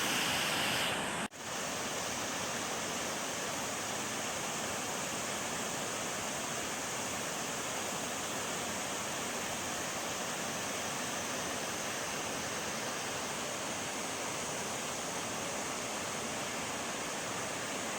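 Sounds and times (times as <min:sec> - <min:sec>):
waterfall rushing: 0:00.0 - 0:02.7.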